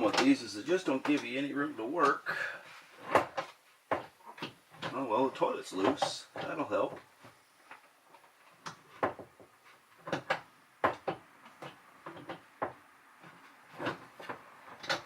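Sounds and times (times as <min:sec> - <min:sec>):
knocks and clunks of toilet fittings: 0:03.0 - 0:05.0, 0:05.8 - 0:07.3, 0:08.6 - 0:15.0.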